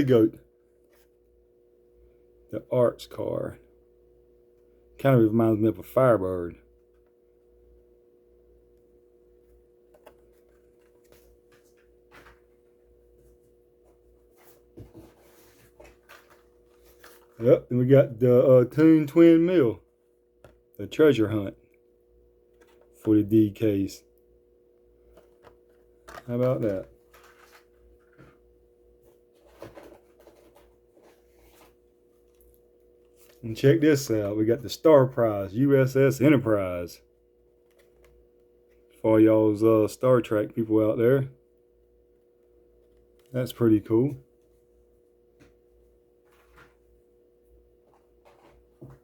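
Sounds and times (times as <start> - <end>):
faint steady hum: 0.0 - 49.0
plastic packages clicking and rustling: 25.2 - 28.3.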